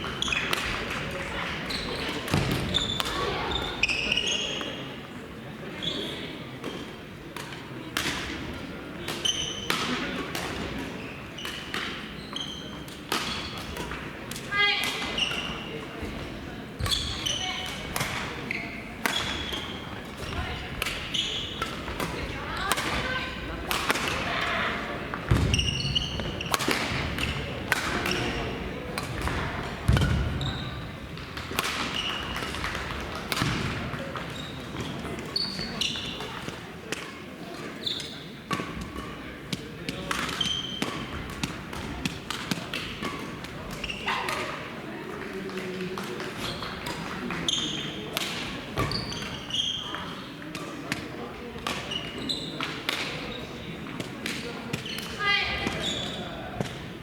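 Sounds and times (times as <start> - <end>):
shoes squeaking on court floor: 0.0 - 0.7, 1.5 - 4.9, 5.8 - 6.9, 9.0 - 14.0, 14.6 - 16.0, 16.8 - 23.6, 25.1 - 44.5, 45.3 - 56.8
voices in background: 0.1 - 57.0
racket hitting shuttlecock: 12.9 - 15.6, 16.8 - 24.5, 25.1 - 30.3, 31.2 - 35.0, 38.5 - 44.6, 52.6 - 53.3.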